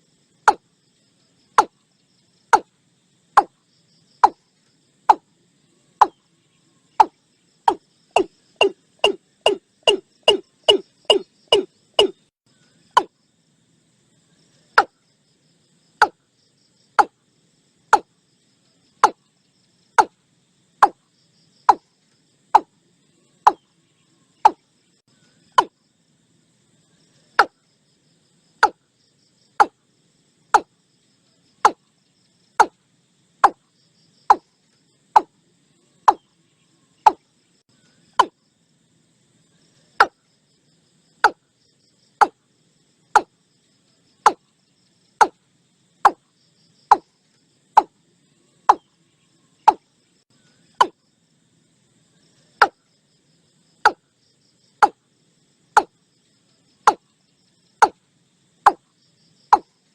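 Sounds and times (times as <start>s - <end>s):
bird calling with knocking notes: 0.4s - 0.7s, 1.5s - 1.8s, 2.4s - 3.6s, 4.2s - 5.3s, 6.0s - 6.3s, 6.9s - 13.2s, 14.7s - 15.0s, 16.0s - 16.2s, 16.9s - 17.2s, 17.9s - 18.2s, 19.0s - 19.3s, 19.9s - 20.2s, 20.8s - 21.0s, 21.6s - 22.8s, 23.4s - 23.7s, 24.4s - 25.8s, 27.3s - 27.6s, 28.6s - 28.9s, 29.5s - 29.8s, 30.5s - 30.7s, 31.6s - 31.9s, 32.5s - 32.8s, 33.4s - 35.4s, 36.0s - 36.3s, 37.0s - 38.4s, 40.0s - 40.3s, 41.2s - 41.4s, 42.1s - 42.4s, 43.1s - 43.4s, 44.2s - 44.5s, 45.1s - 45.4s, 46.0s - 47.1s, 47.7s - 48.0s, 48.6s - 48.9s, 49.6s - 49.9s, 50.6s - 51.0s, 52.6s - 52.8s, 53.8s - 54.1s, 54.8s - 55.0s, 55.7s - 55.9s, 56.8s - 57.1s, 57.8s - 58.0s, 58.6s - 58.9s, 59.5s - 59.8s.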